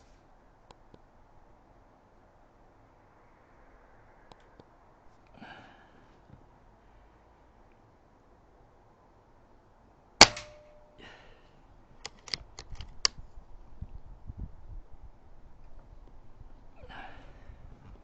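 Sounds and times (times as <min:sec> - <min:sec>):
air rifle shot: 0:10.2 - 0:10.9.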